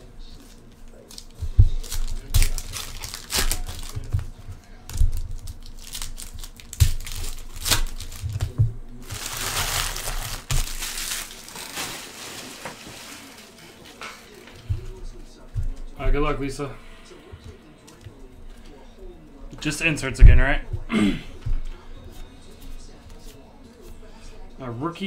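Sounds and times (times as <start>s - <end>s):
card pack wrapper crinkling: 1.0s - 4.2s, 4.9s - 13.6s.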